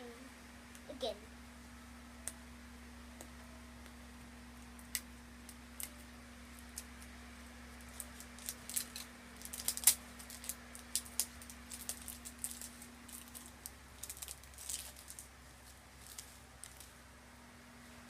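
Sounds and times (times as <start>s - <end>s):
faint steady hum: 0.0s - 18.0s
wrapping crinkling: 7.7s - 17.0s.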